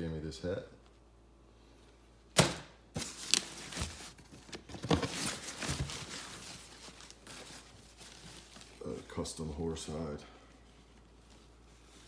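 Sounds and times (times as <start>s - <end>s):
cardboard box and paper rustling: 3.0s - 9.9s.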